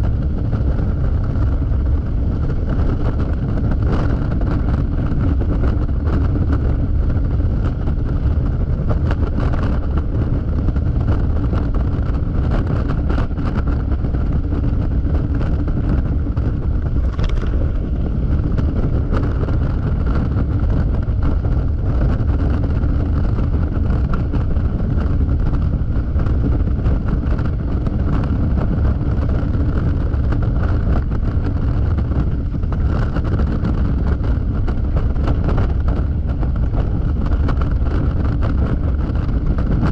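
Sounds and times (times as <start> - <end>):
wind rushing over microphone: 0.0 - 39.9
scooter engine running: 13.4 - 25.8.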